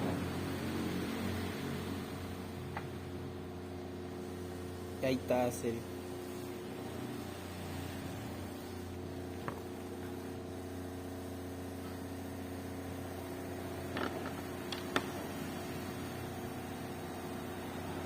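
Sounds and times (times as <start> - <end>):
washing machine hum: 0.0 - 18.0.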